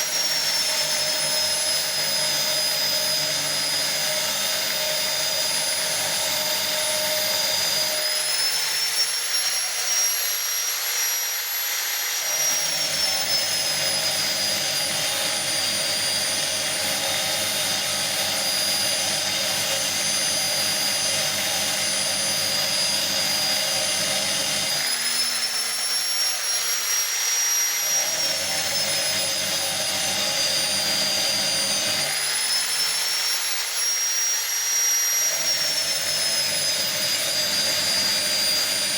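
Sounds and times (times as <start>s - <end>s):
grinder motor whine: 0.0s - 38.9s.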